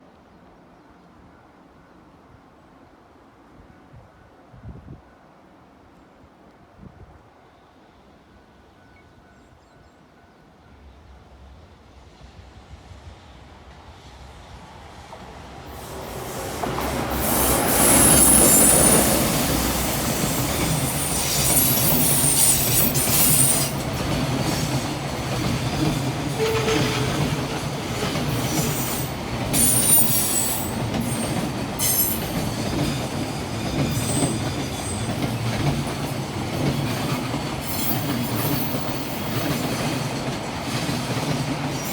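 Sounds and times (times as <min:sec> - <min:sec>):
freight train rumbling: 0:10.8 - 0:41.9
wheels clacking over rail joints: 0:16.6 - 0:41.9.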